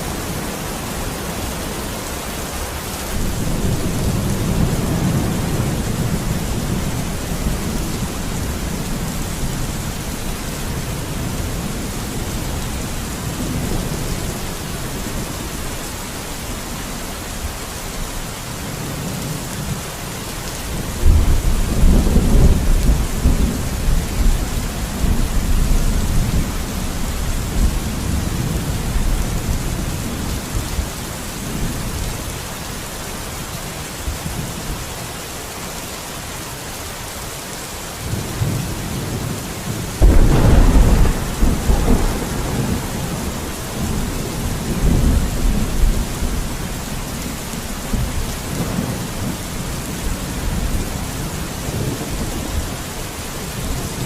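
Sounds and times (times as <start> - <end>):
steady rain: 0.0 - 54.0
thunder rumbling: 3.0 - 15.3, 21.0 - 30.5, 40.0 - 52.7.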